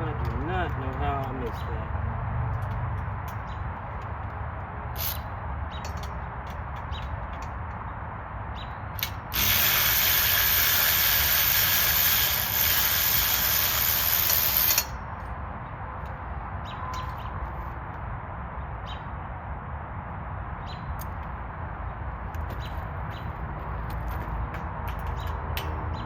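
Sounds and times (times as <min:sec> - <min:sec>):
ratchet wrench clicks: 0:05.0 - 0:05.3, 0:09.0 - 0:15.0
fast ratcheting rasp: 0:09.0 - 0:15.0.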